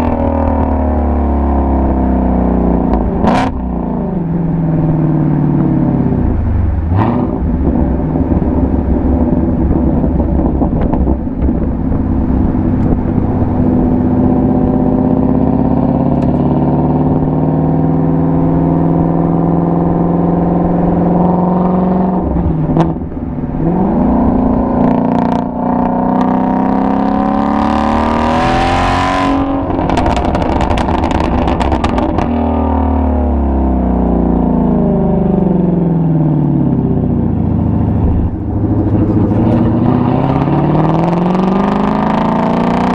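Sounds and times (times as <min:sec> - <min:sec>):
car exhaust revving: 0:00.0 - 0:42.9
exhaust pops and crackles: 0:07.6 - 0:13.7, 0:29.6 - 0:32.4, 0:38.0 - 0:39.8.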